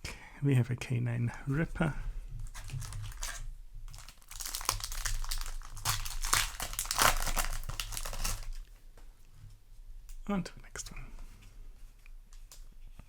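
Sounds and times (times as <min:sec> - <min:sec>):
foil wrapper crinkling: 0:02.4 - 0:08.7.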